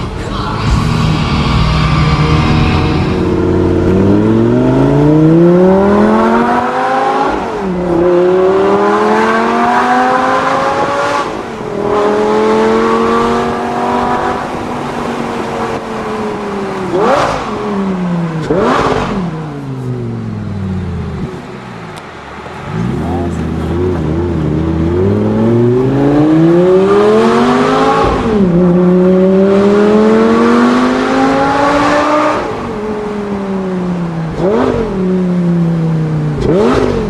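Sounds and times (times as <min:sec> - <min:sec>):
sports car accelerating hard: 0:00.6 - 0:20.2, 0:20.8 - 0:37.0.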